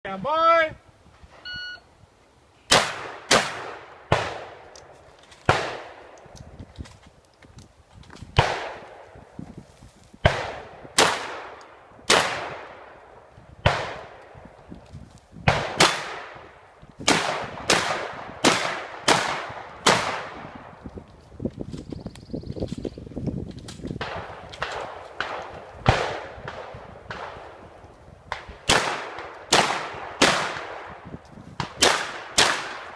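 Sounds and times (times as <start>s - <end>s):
shotgun shots echoing: 2.7s - 4.6s, 5.5s - 6.2s, 8.4s - 9.1s, 10.2s - 13.0s, 13.6s - 14.2s, 15.5s - 16.4s, 17.0s - 20.7s, 24.0s - 27.6s, 28.3s - 32.9s.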